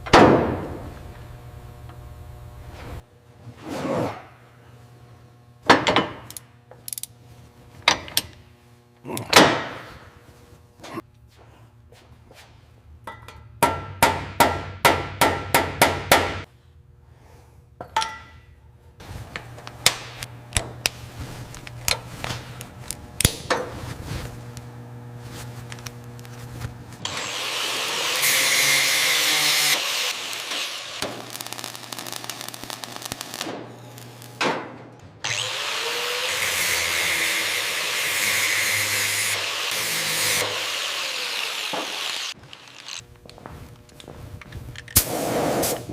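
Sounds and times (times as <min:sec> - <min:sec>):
power tool running: 0:27.0 - 0:34.4, 0:35.2 - 0:43.1.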